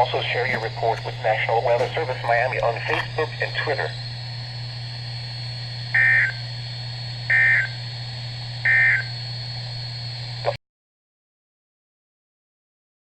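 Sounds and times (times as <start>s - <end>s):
screechy digital data tones: 0.0s - 4.2s, 5.9s - 6.5s, 7.3s - 7.9s, 8.6s - 9.3s
steady low hum: 0.0s - 10.6s.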